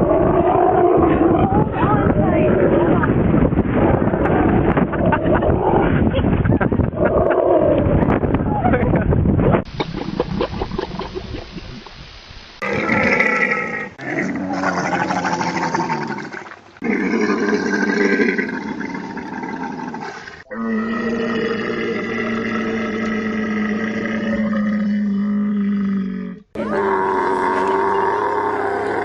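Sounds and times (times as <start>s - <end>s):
camels growling and roaring: 0.0s - 3.0s, 12.6s - 29.0s.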